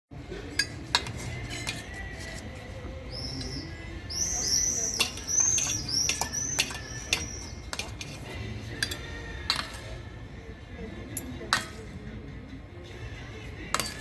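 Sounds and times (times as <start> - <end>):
cutlery and dishes clinking: 0.3 - 10.1, 11.0 - 12.0, 13.6 - 14.0
small bird chirping: 3.0 - 7.7.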